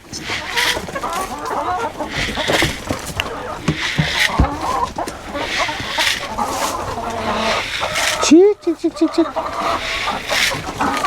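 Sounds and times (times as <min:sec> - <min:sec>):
chickens clucking: 0:00.0 - 0:11.0
dull thump: 0:02.2 - 0:05.2.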